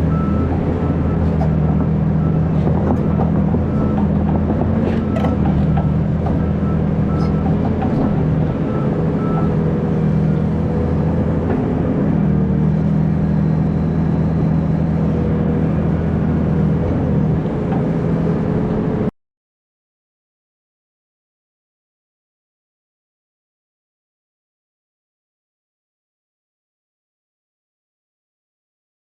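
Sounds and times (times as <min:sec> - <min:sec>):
excavator diesel engine running: 0:00.0 - 0:19.1.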